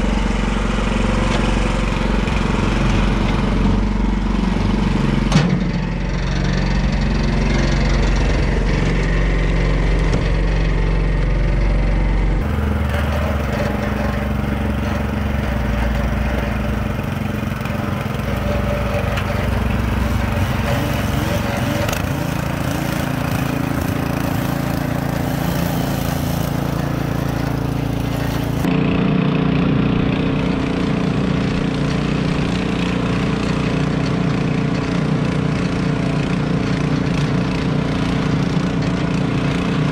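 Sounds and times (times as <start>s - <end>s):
small gasoline engines running: 0.0s - 39.9s.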